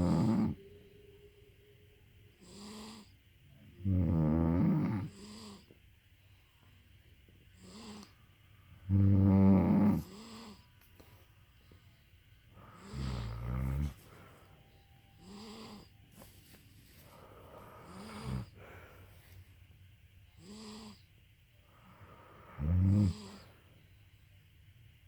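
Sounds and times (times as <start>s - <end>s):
people snoring: 0.0s - 0.6s, 2.4s - 3.1s, 3.8s - 5.7s, 7.6s - 8.1s, 8.9s - 10.7s, 12.6s - 14.0s, 15.2s - 15.9s, 17.2s - 18.8s, 22.4s - 23.5s.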